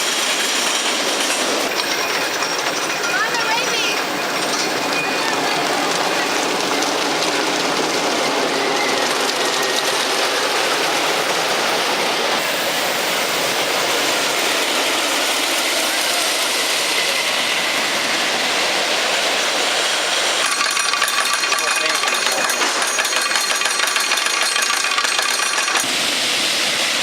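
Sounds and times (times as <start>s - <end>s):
roller coaster train rattling: 0.0s - 27.0s.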